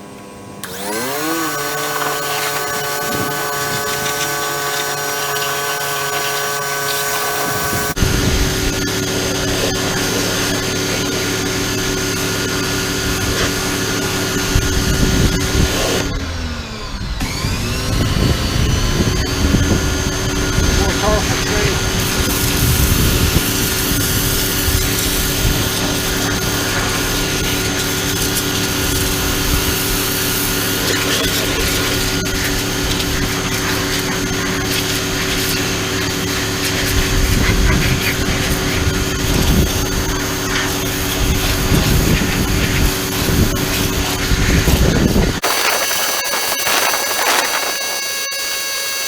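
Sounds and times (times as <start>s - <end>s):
pressure washer motor hum: 0.6s - 37.3s, 45.4s - 49.0s
high-pressure water spray hiss: 2.2s - 8.0s, 45.4s - 48.0s.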